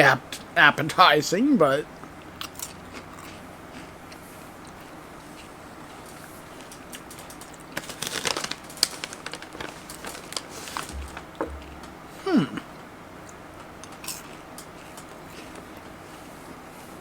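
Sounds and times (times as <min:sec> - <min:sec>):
candy crunching while chewed: 0:02.4 - 0:11.9.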